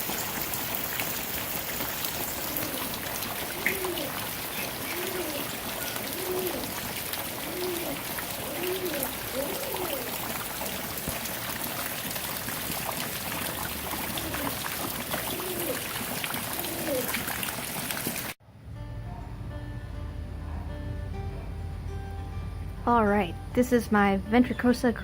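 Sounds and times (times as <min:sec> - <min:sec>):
rain falling and trickling: 0:00.0 - 0:18.4.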